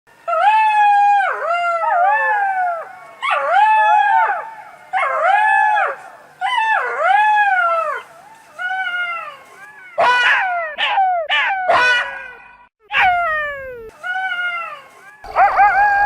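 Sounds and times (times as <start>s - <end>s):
jackals howling: 12.9s - 16.0s.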